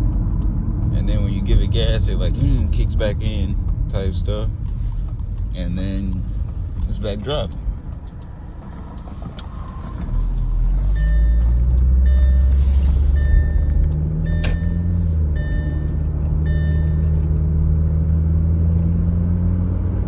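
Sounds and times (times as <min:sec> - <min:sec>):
car engine droning: 0:00.0 - 0:20.0
short beeps: 0:10.9 - 0:17.2.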